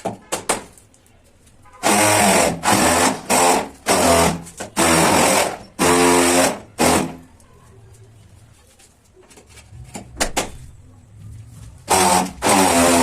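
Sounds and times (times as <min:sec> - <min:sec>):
power tool motor bursts: 0:01.8 - 0:07.2, 0:11.9 - 0:13.0.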